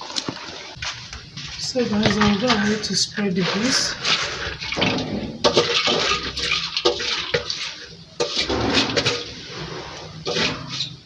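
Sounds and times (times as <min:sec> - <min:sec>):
water splashing and pouring: 0:01.9 - 0:11.0.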